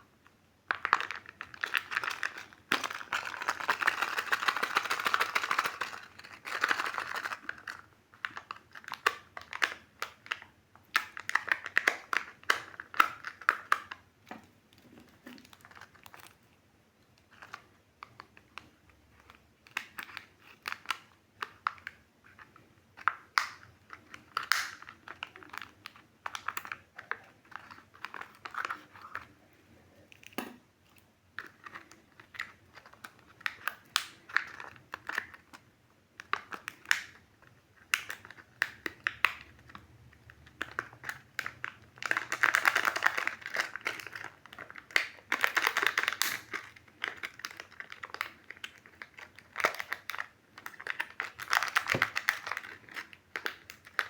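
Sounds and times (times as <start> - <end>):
wrappers crinkling: 40.6 - 54.0.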